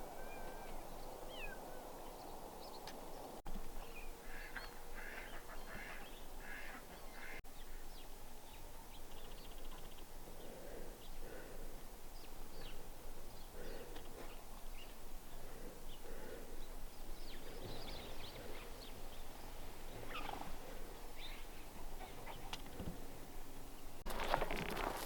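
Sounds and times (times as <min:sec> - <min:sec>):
poultry calling softly: 0:04.2 - 0:07.8.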